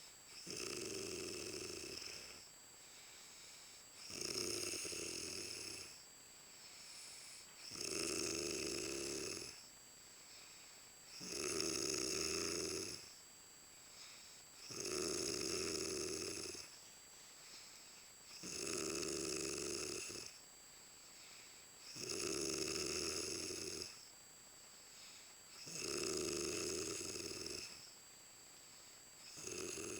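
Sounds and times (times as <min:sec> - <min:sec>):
woman snoring loudly: 0:00.4 - 0:02.4, 0:04.0 - 0:06.0, 0:07.7 - 0:09.6, 0:11.2 - 0:13.1, 0:14.7 - 0:16.7, 0:18.4 - 0:20.4, 0:21.9 - 0:24.0, 0:25.6 - 0:27.8, 0:29.3 - 0:29.9.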